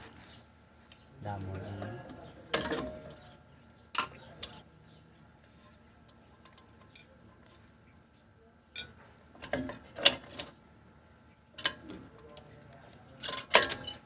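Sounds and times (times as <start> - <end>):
metal tools clinking: 13.0 - 14.0.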